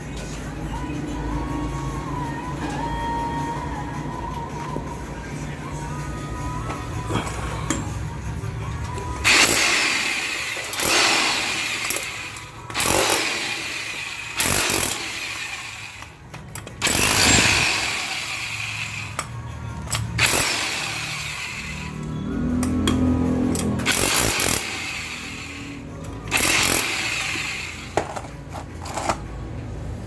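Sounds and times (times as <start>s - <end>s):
power tool whining: 9.0s - 28.2s.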